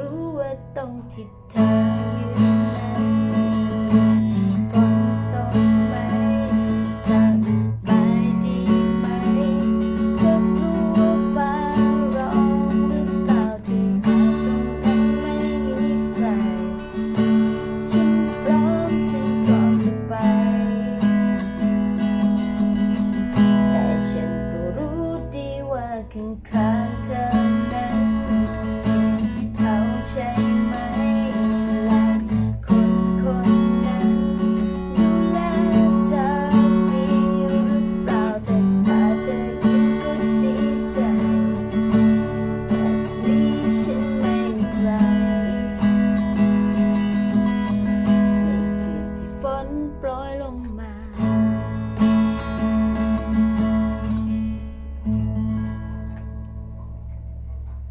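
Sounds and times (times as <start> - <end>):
acoustic guitar strumming chords: 0.0 - 57.9.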